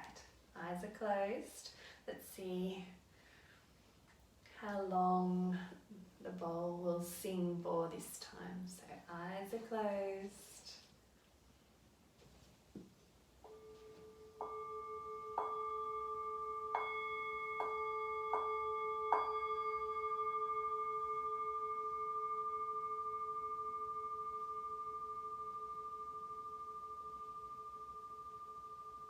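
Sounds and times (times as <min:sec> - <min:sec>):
singing bowl ringing: 0:13.4 - 0:29.0.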